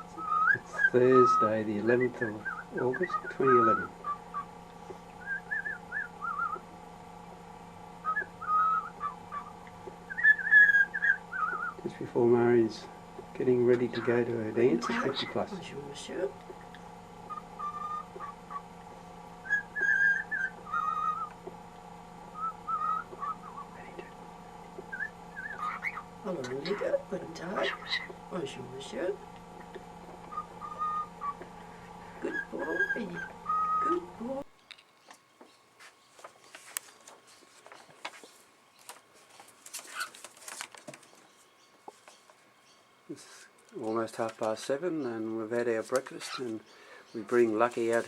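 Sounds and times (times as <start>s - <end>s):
cockatiel whistling: 0.0s - 4.4s, 5.2s - 6.6s, 8.0s - 9.5s, 10.1s - 11.8s, 17.3s - 18.6s, 19.4s - 21.4s, 22.3s - 23.6s, 24.9s - 26.0s, 30.3s - 31.5s, 32.3s - 34.0s.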